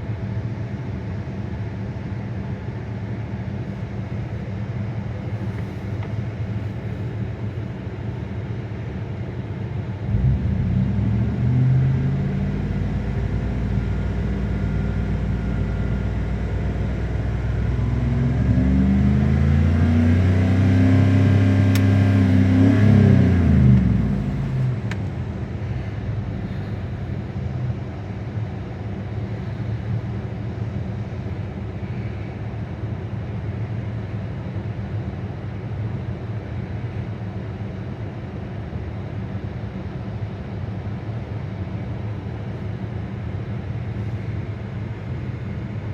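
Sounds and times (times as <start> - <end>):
misfiring car engine running: 10.0 - 27.5.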